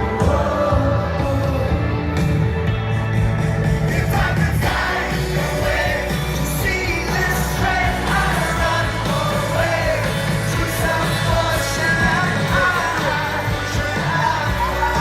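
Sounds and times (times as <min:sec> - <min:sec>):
indie rock song with vocals: 0:00.0 - 0:15.0.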